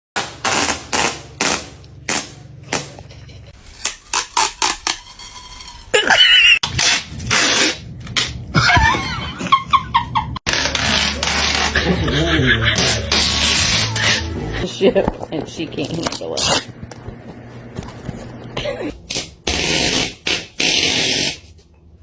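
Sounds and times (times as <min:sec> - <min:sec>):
adhesive tape ripping: 0:03.6 - 0:08.4, 0:10.5 - 0:11.9, 0:12.8 - 0:14.2, 0:19.0 - 0:21.5.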